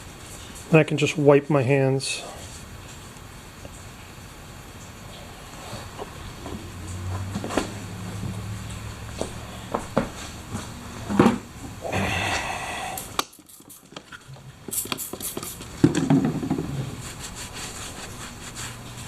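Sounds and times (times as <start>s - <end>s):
heavy knock with clatter: 15.8s - 16.8s.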